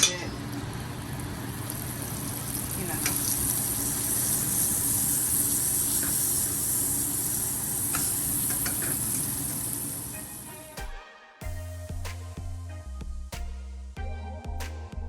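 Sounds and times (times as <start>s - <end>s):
butter sizzling in a pot: 0.0s - 10.8s.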